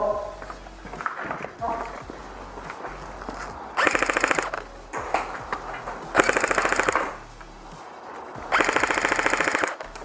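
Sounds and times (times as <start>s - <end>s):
airsoft gun firing full auto: 3.8s - 4.6s, 6.2s - 7.2s, 8.5s - 9.8s.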